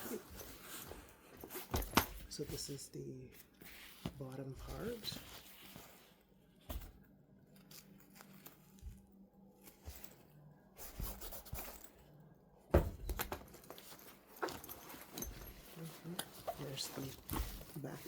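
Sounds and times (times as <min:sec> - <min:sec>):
rustling and scraping of carrier: 0:00.0 - 0:02.8, 0:03.4 - 0:12.1, 0:13.2 - 0:18.0
thump: 0:12.7 - 0:13.2.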